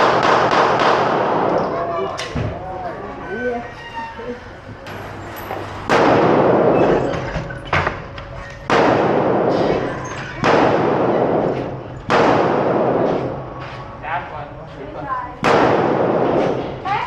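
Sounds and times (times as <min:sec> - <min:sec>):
sharp gunshot crack: 0:00.0 - 0:01.6, 0:05.9 - 0:06.8, 0:08.7 - 0:13.4, 0:15.4 - 0:16.7
echoing gunshots: 0:00.0 - 0:01.9, 0:04.9 - 0:08.0, 0:08.6 - 0:13.7, 0:15.4 - 0:16.8.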